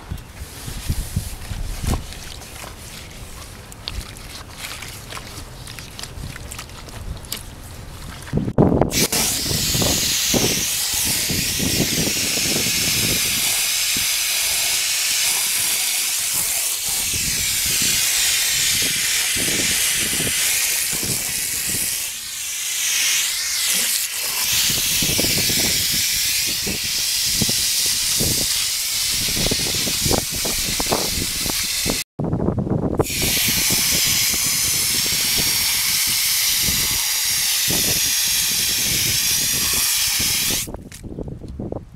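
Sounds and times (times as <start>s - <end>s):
spray gun hissing jet: 8.9s - 32.0s, 33.0s - 40.7s.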